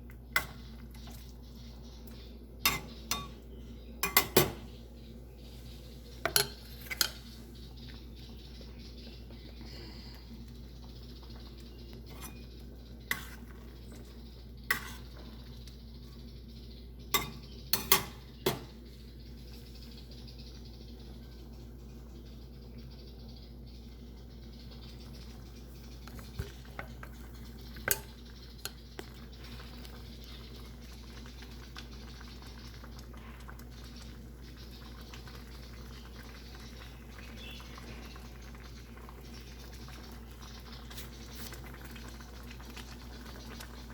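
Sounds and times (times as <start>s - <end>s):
low hiss from stove: 0.0s - 43.9s
spoon clinking against pot: 2.6s - 3.4s, 4.0s - 4.6s, 6.2s - 7.2s, 17.1s - 18.7s.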